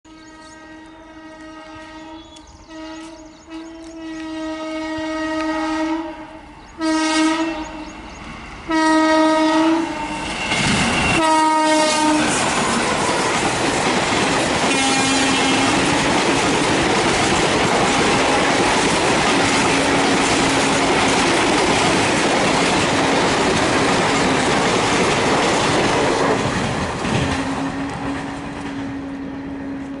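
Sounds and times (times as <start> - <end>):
locomotive horn blasts: 0.1 - 7.9, 8.7 - 10.4, 11.0 - 12.4, 14.7 - 15.9
low steady horn-like tone: 0.1 - 8.0, 11.2 - 12.3
train coaches rushing past: 0.1 - 30.0.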